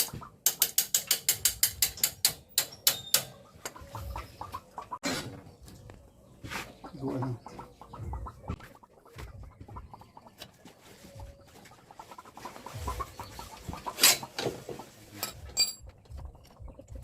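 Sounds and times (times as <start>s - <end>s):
hand tools clicking and knocking: 0.0s - 3.8s, 15.2s - 16.2s
chickens clucking: 0.0s - 17.0s.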